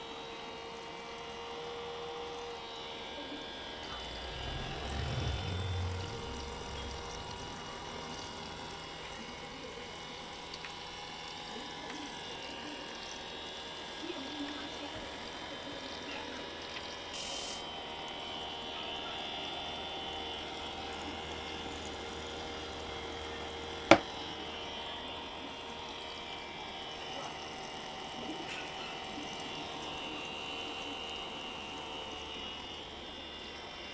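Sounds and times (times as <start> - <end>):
small motor whining: 0.8 - 10.4.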